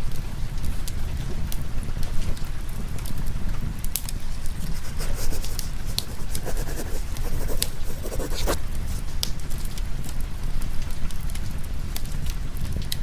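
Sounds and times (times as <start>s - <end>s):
low rumble of rain: 0.0s - 4.4s, 9.1s - 13.0s.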